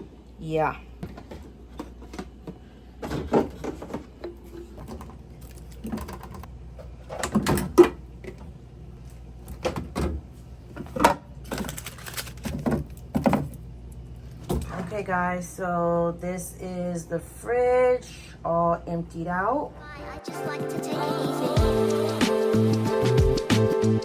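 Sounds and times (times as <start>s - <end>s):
jars and bottles clattering: 3.0s - 6.4s.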